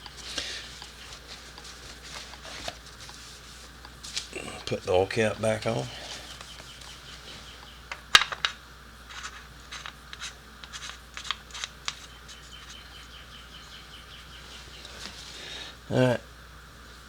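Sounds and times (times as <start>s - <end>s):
small clicks and scrapes: 0.0s - 4.3s, 6.1s - 13.2s.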